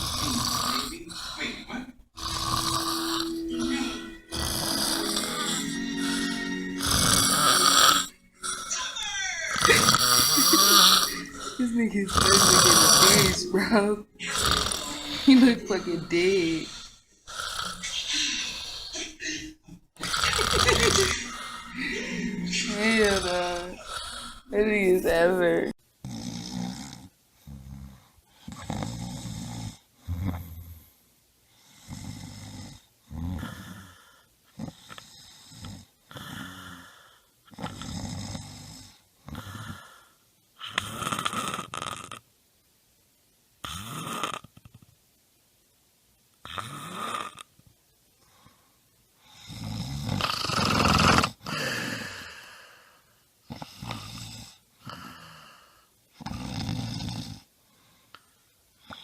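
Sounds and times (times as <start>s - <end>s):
noisy rasping breaths: 0.0s - 19.2s, 20.0s - 25.6s, 48.3s - 58.3s.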